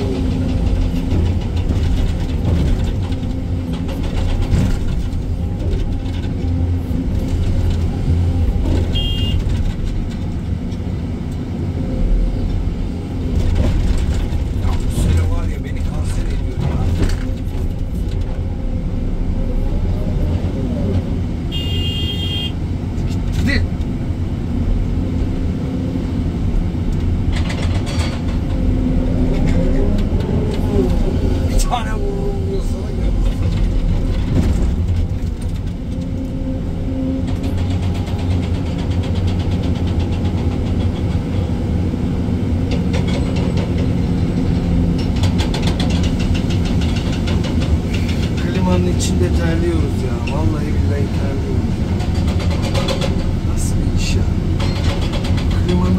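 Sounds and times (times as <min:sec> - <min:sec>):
diesel engine running: 0:00.0 - 0:55.9.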